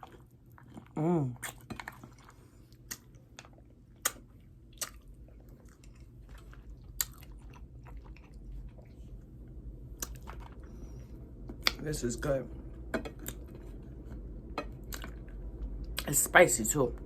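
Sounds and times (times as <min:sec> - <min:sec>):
person chewing: 0:00.0 - 0:11.8, 0:12.7 - 0:16.1
wet mouth smacks: 0:04.0 - 0:05.0.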